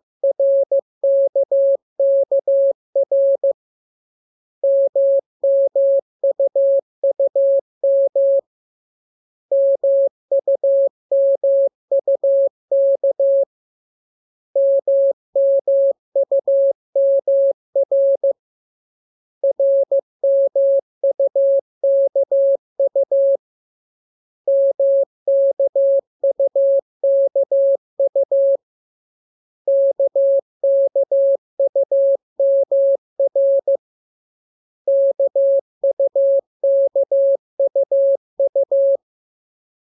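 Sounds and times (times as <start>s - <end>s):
morse code beeps: 34.9s - 39.0s.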